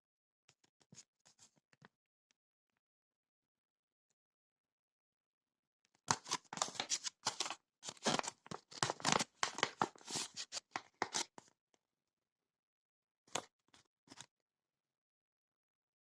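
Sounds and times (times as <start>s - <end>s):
rustling and crinkling: 6.1s - 11.3s.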